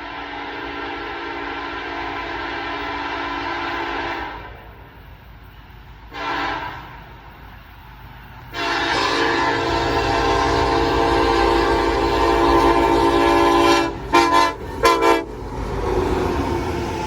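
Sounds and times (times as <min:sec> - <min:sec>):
locomotive air horn blasts: 0:00.0 - 0:04.5, 0:06.1 - 0:07.0, 0:08.5 - 0:15.4
passing train rumble: 0:00.0 - 0:17.0.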